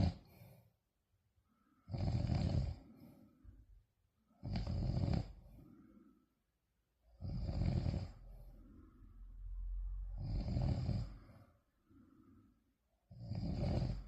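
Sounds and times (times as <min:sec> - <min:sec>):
loud snoring: 0:00.0 - 0:00.4, 0:01.8 - 0:03.0, 0:04.4 - 0:05.6, 0:07.1 - 0:08.4, 0:10.1 - 0:11.5, 0:13.1 - 0:14.0.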